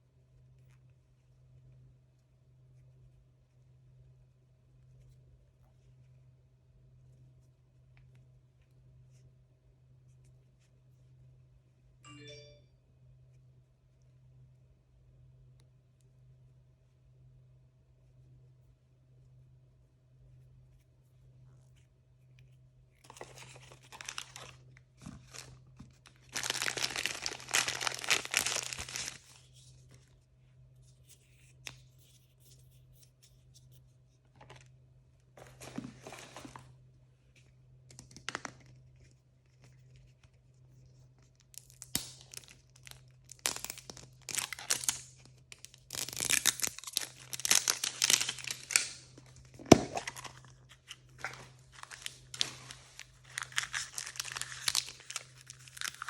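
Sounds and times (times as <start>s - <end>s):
packaging tearing and crinkling: 23.1s - 29.4s, 41.6s - 50.4s, 51.2s - 56.0s.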